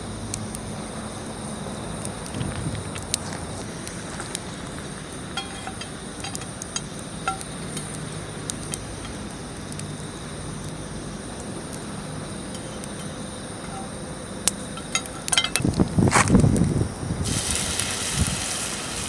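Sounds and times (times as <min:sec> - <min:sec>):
light metallic clinks: 0:05.4 - 0:07.5, 0:14.8 - 0:15.7
food sizzling in a skillet: 0:17.2 - 0:19.0.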